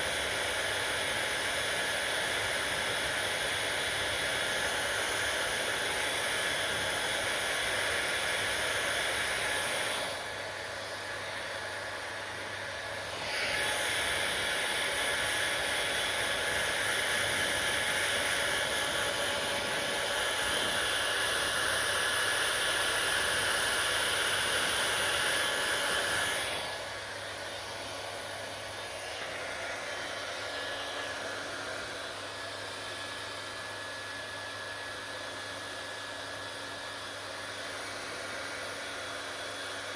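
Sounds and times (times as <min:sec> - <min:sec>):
hair dryer running: 0:00.0 - 0:39.9.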